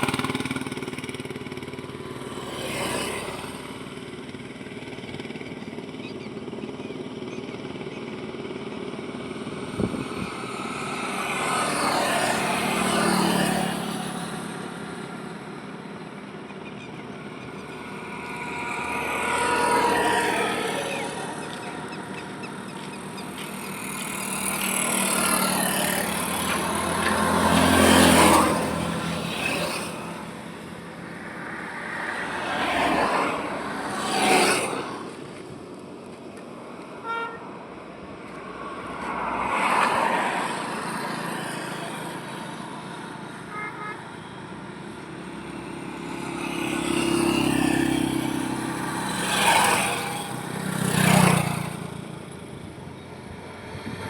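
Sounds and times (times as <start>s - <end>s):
steady road hum: 0.0s - 54.0s
vehicles passing: 0.0s - 54.0s.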